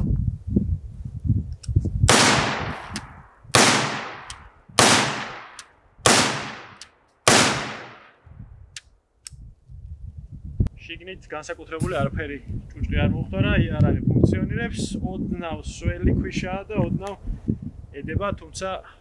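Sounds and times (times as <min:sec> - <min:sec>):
gunshot echo: 0:02.1 - 0:08.2
rifle shots: 0:02.1 - 0:08.2.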